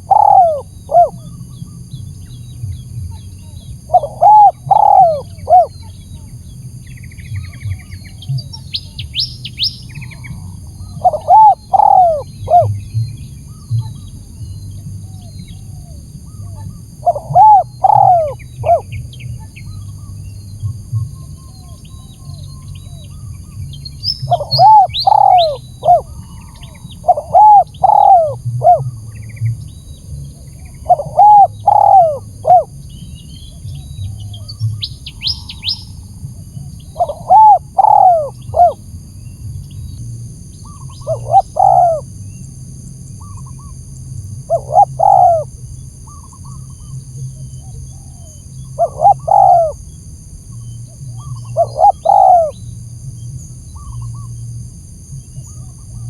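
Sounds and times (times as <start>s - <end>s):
dove cooing: 0.0s - 1.5s, 3.2s - 5.9s, 7.8s - 12.9s, 14.8s - 20.1s, 24.1s - 29.1s, 30.6s - 32.8s, 33.7s - 38.8s, 40.7s - 42.1s, 44.4s - 45.5s, 46.1s - 49.8s, 51.0s - 52.6s
faint high bird chirps: 0.0s - 38.8s, 40.6s - 42.4s, 44.5s - 49.8s, 50.5s - 52.7s.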